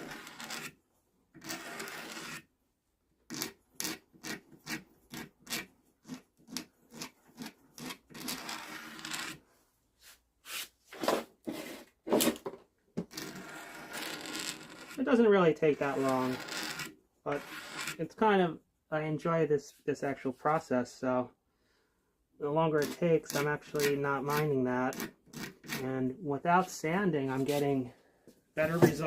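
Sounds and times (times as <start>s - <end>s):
scraper on wooden handle: 0.0s - 0.8s, 1.4s - 2.5s, 3.3s - 9.4s, 13.1s - 15.0s, 15.7s - 18.0s, 22.8s - 25.8s.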